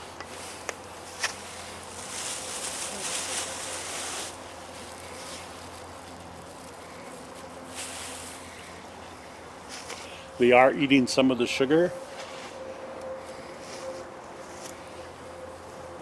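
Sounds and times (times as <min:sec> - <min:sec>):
rustling hiss: 0:00.0 - 0:10.5.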